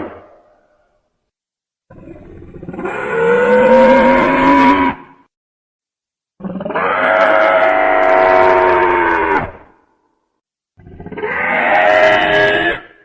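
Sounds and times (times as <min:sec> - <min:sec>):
dinosaur roar: 0:01.9 - 0:05.1, 0:06.4 - 0:09.8, 0:10.8 - 0:13.0.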